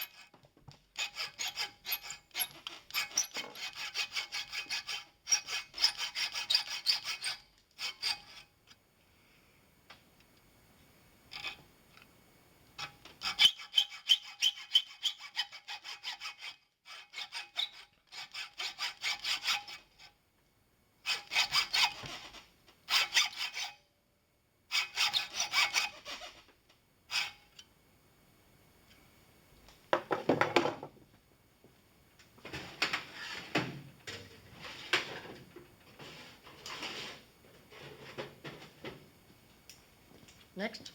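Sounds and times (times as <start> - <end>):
hacksaw cutting metal: 0.0 - 0.3, 1.0 - 8.4, 12.8 - 20.1, 21.1 - 23.8, 24.7 - 26.4.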